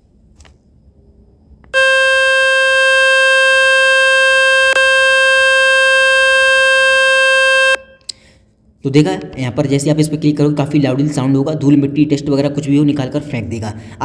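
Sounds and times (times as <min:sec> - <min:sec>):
loud steady buzzing tone: 0:01.6 - 0:08.1.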